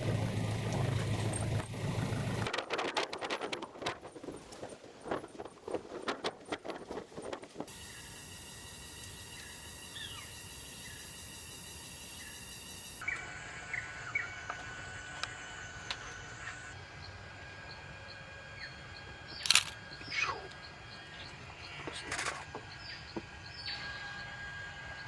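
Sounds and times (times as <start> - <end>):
insect drone: 7.6 - 25.0
bird calls: 9.1 - 16.8, 18.5 - 24.4.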